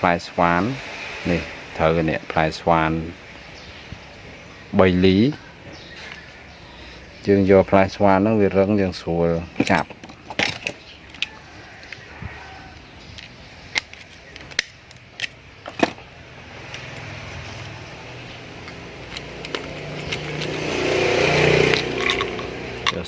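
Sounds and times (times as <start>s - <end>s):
vehicle engine approaching: 16.0s - 23.0s.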